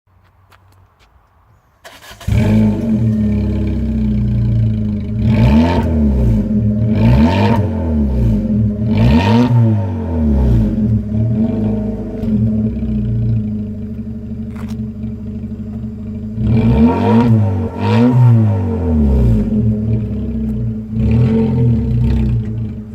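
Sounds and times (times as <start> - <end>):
car engine idling loudly: 18.9 - 22.9.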